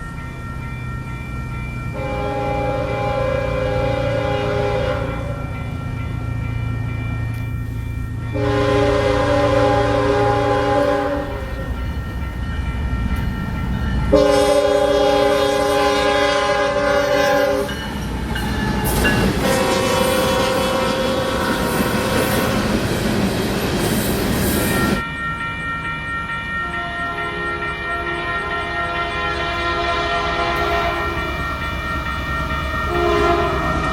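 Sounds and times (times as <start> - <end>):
train rumbling and clattering: 0.0 - 33.9
distorted locomotive air horn: 2.0 - 5.6, 8.3 - 11.8, 14.1 - 17.8, 18.5 - 22.8, 26.6 - 31.4, 32.9 - 33.9.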